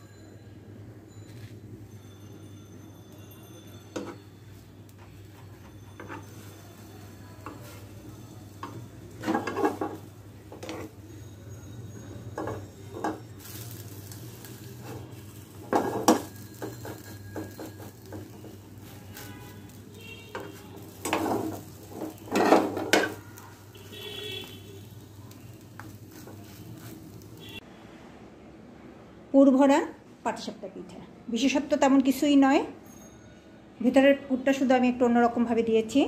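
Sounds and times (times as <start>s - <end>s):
utensils scraping a pan: 5.2s - 6.8s, 7.4s - 11.0s, 12.3s - 25.0s, 25.7s - 27.5s.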